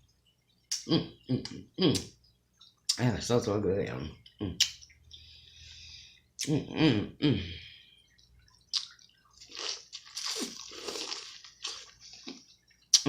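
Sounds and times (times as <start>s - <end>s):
wet chewing and slurping: 8.4s - 13.0s.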